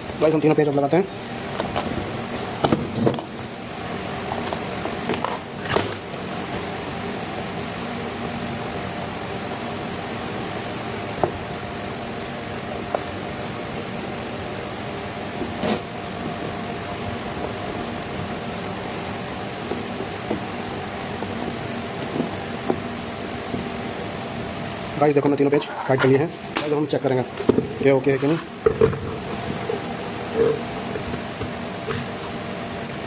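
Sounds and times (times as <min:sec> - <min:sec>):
fan-like hum: 0:00.0 - 0:33.0.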